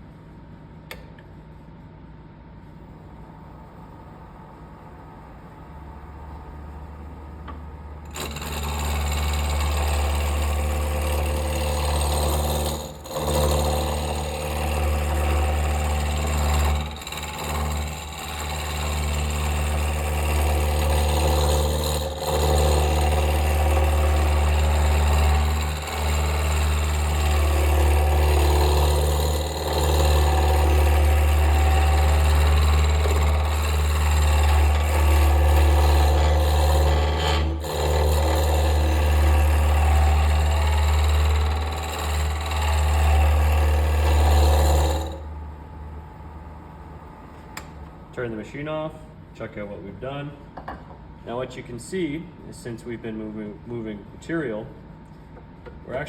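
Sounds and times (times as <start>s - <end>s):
wood lathe humming: 6.2s - 45.9s
chisel cutting wood: 8.0s - 45.3s.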